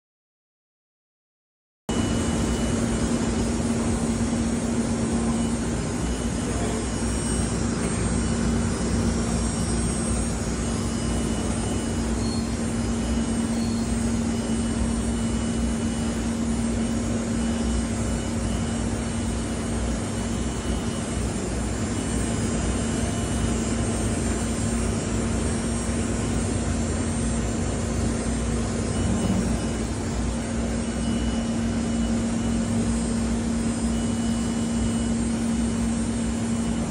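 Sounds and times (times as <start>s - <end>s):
router machine droning: 28.9s - 30.3s.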